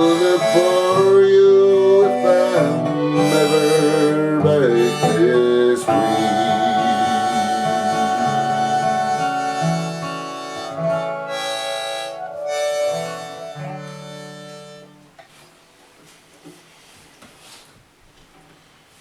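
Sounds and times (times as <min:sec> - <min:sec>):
harmonica playing: 0:00.0 - 0:15.2
acoustic guitar: 0:00.0 - 0:16.3.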